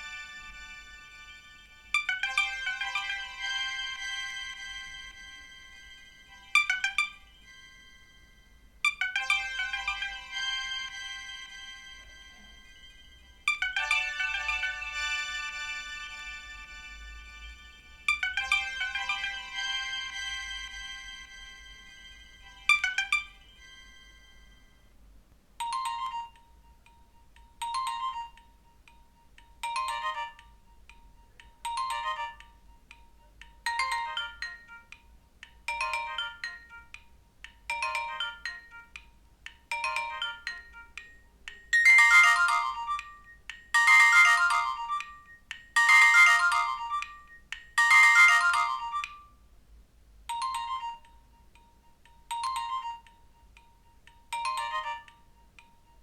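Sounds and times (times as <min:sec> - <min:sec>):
electronic alarm chime: 0:41.7 - 0:49.2.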